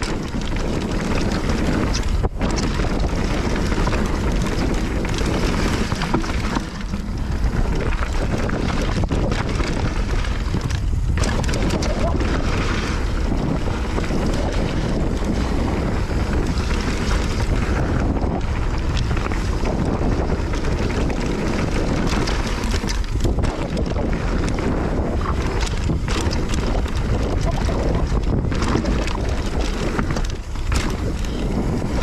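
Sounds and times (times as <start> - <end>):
bike clicks and rattles: 0.0 - 32.0
wind buffeting microphone: 0.0 - 32.0.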